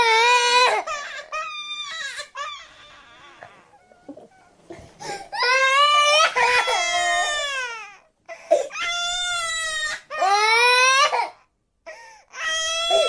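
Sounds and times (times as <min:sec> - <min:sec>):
sobbing breaths: 0:02.6 - 0:08.9, 0:11.8 - 0:13.0.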